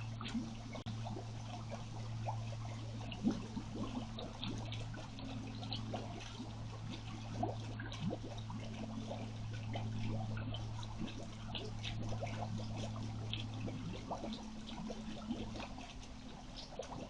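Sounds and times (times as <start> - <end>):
bubbling chirps: 0.0 - 17.0
steady low hum: 0.0 - 17.0
water trickling and gurgling: 0.0 - 17.0.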